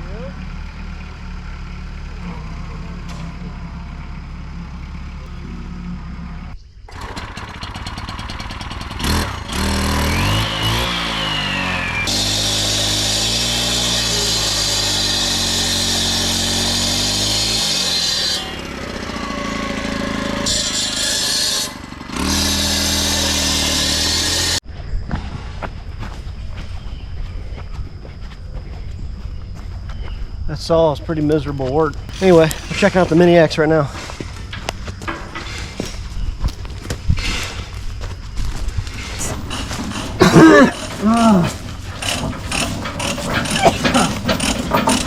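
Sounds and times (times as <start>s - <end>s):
tractor engine idling: 0.0s - 12.8s, 13.7s - 24.6s, 31.8s - 45.0s
saw cutting concrete: 7.0s - 24.6s, 32.1s - 34.4s, 38.9s - 45.0s.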